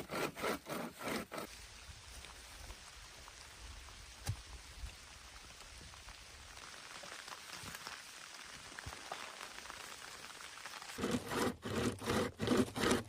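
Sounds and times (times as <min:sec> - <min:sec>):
steady rain hissing: 0:01.5 - 0:11.0
raindrops ticking on surfaces: 0:02.1 - 0:11.0.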